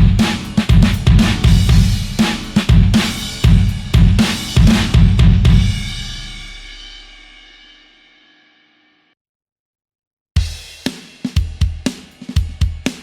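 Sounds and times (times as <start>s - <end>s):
drum kit beat: 0.0s - 7.3s, 10.4s - 13.0s.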